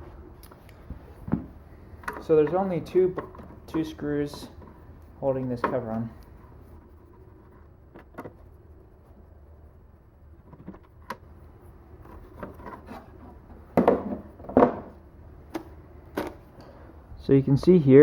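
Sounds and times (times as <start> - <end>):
light clicks and scrapes: 12.0 - 13.4.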